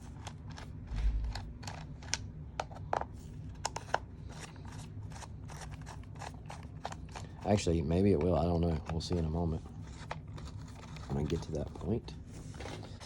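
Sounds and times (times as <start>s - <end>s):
low thump: 0.9s - 1.6s.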